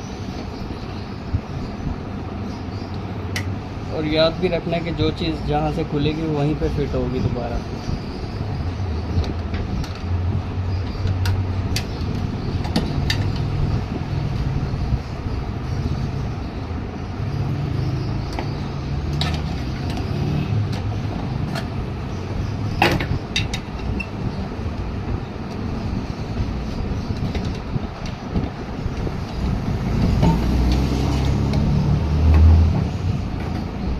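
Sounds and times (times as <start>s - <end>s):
steady low rumble: 0.0s - 33.9s.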